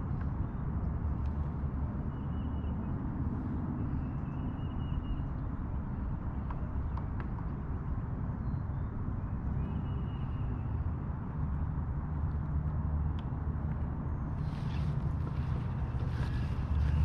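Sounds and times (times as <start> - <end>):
wind buffeting microphone: 13.5 - 17.0.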